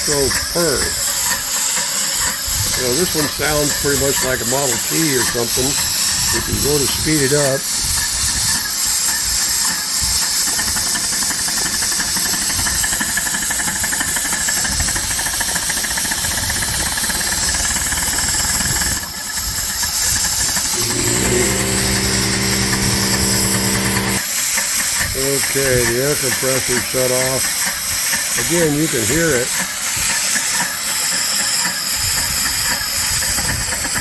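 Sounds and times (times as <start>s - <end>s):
air compressor humming: 0.0s - 1.1s, 2.5s - 7.8s, 15.7s - 24.4s
steam engine chuffing: 0.0s - 34.0s
air hissing: 20.0s - 24.2s.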